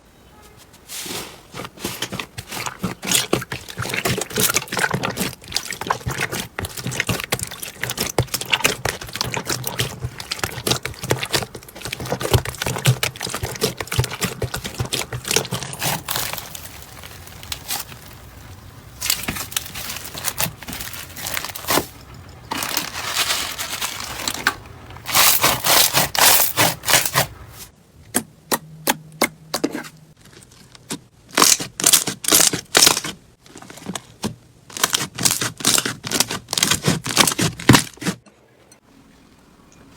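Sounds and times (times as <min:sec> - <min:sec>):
wet scraping of slime: 0:00.4 - 0:27.7, 0:29.6 - 0:38.3
slime crackling and popping: 0:01.8 - 0:21.8.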